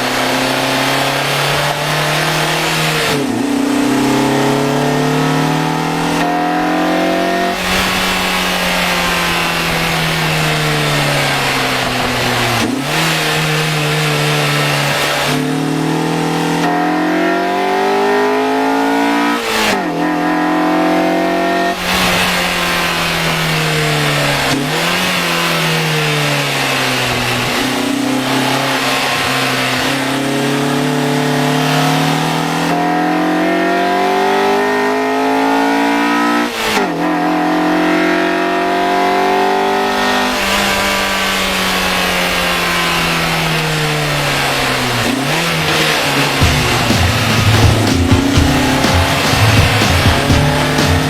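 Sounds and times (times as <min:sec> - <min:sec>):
car engine revving: 0:00.0 - 0:51.0.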